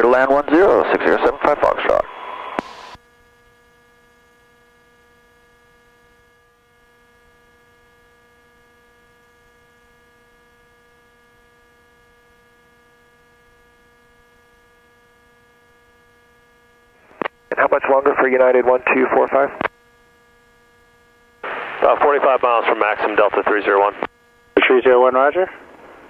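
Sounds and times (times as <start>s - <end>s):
faint electrical hum: 0.0s - 26.0s
radio noise burst: 0.1s - 3.0s, 17.0s - 19.7s, 21.4s - 26.0s.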